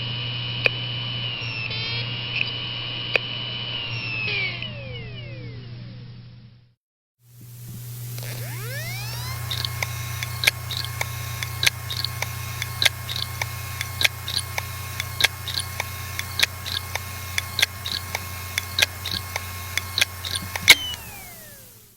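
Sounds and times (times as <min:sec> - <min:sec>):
hard drive spinning whine: 0:00.0 - 0:06.7, 0:07.3 - 0:21.9
hard drive clicking: 0:07.3 - 0:21.9.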